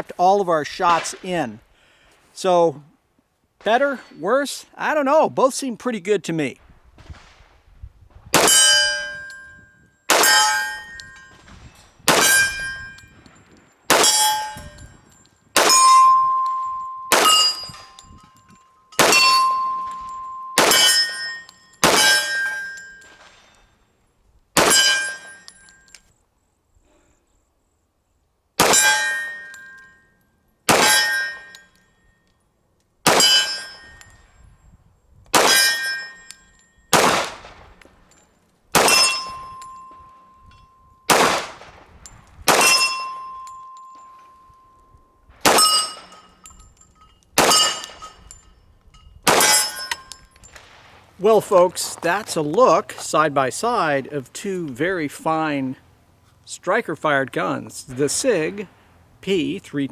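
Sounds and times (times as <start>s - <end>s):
pistol shots: 8.3s - 8.9s, 10.1s - 10.6s, 12.1s - 12.6s, 13.9s - 14.4s, 15.6s - 15.9s, 17.1s - 17.9s, 19.0s - 21.2s, 21.8s - 22.5s, 24.6s - 25.1s, 28.6s - 29.2s, 30.7s - 31.2s, 33.0s - 33.7s, 35.3s - 35.9s, 36.9s - 37.8s, 38.7s - 39.4s, 41.1s - 41.9s, 42.5s - 43.0s, 45.4s - 46.2s, 47.4s - 48.0s, 49.3s - 51.2s
steel plates ringing: 8.4s - 23.8s, 24.6s - 26.1s, 28.6s - 34.6s, 35.5s - 37.0s, 38.0s - 41.1s, 42.1s - 50.6s.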